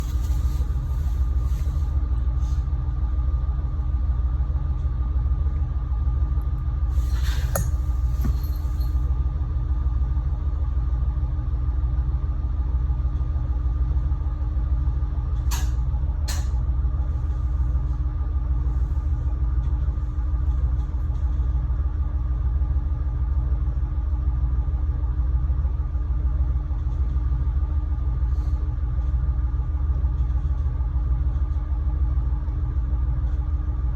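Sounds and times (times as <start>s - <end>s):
diesel railcar engine idling: 0.0s - 33.9s.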